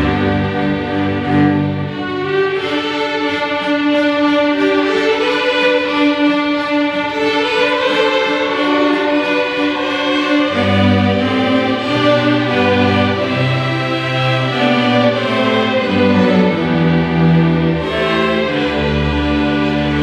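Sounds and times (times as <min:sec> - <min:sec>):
low cello and bass notes: 0:00.0 - 0:20.0
string orchestra playing: 0:00.0 - 0:20.0.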